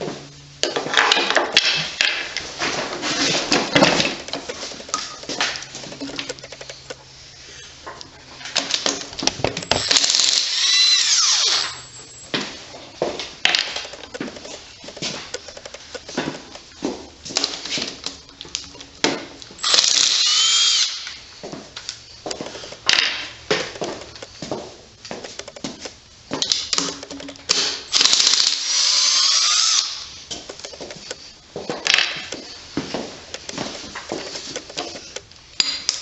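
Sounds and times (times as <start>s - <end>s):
metallic clicks of tools: 4.2s - 7.0s, 13.6s - 16.2s, 23.8s - 24.4s, 25.2s - 28.6s, 30.3s - 31.2s, 33.3s - 36.0s
power drill whining: 9.6s - 12.2s, 19.6s - 21.2s.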